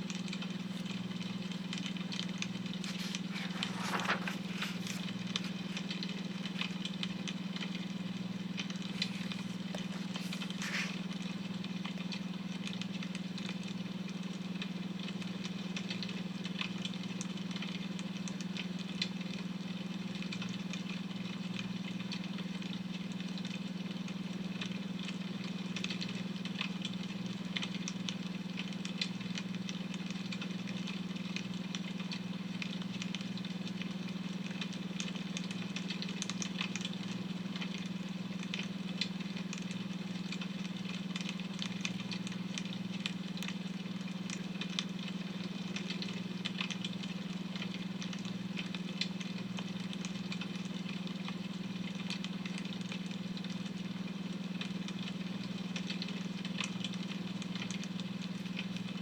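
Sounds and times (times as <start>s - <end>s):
wood fire crackling: 0.1s - 12.8s.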